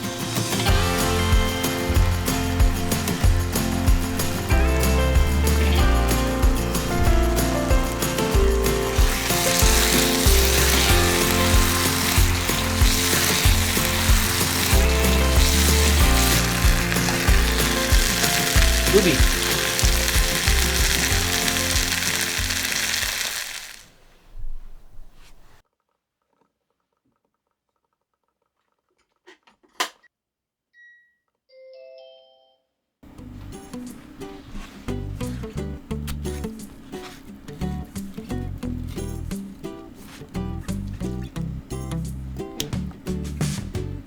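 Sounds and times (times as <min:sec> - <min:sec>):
background music with bass: 0:00.0 - 0:23.2, 0:40.4 - 0:44.0
food sizzling in a pan: 0:06.6 - 0:24.1.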